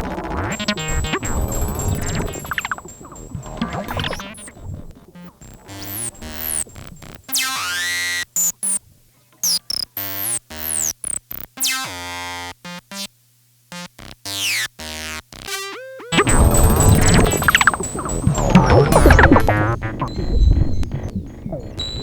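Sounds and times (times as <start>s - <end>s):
choppy stuttering synth notes: 0.0s - 7.8s, 13.8s - 22.0s
synth pitch sweeps: 15.5s - 22.0s
loud noisy synth wash: 16.2s - 20.3s.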